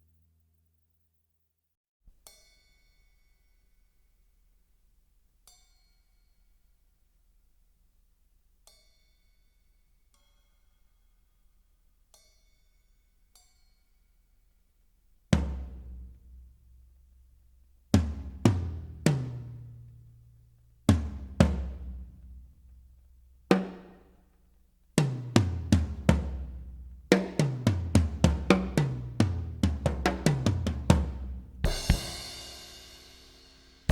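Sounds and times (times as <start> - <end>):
heavy drum hits with deep bass: 31.6 - 33.0.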